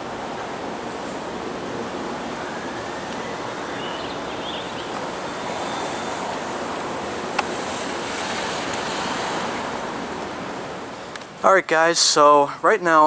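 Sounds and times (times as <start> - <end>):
faint high chirps: 2.4 - 6.3.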